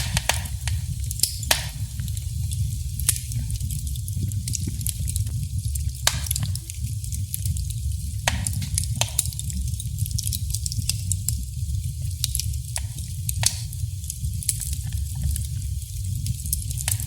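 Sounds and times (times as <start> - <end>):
wood fire crackling and popping: 0.0 - 17.0.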